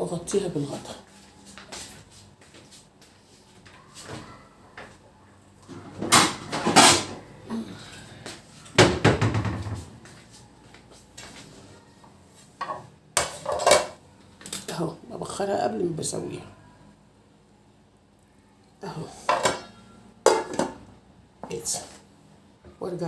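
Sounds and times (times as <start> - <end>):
pan and lid clattering: 6.0 - 7.2, 12.6 - 14.0, 19.3 - 19.7, 20.3 - 20.8.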